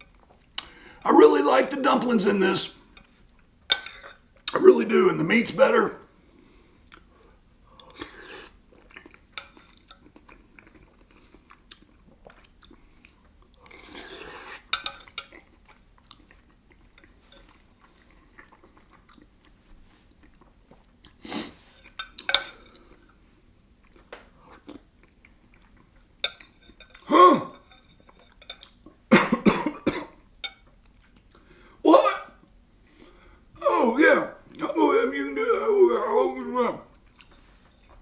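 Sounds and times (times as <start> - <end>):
person chewing: 7.8 - 22.9.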